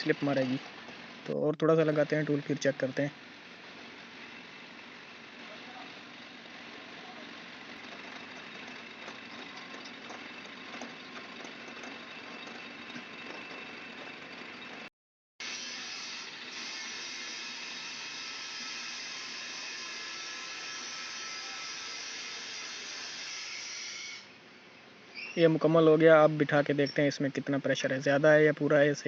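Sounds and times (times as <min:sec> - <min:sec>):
steady workshop hiss: 0:00.0 - 0:07.8, 0:15.4 - 0:29.0.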